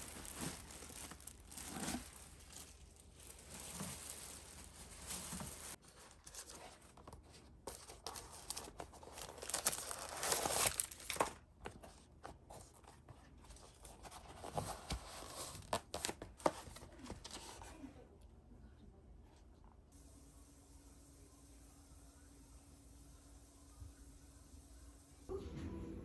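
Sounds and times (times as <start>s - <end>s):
packaging crinkling and tearing: 0.0s - 6.9s, 7.7s - 11.4s.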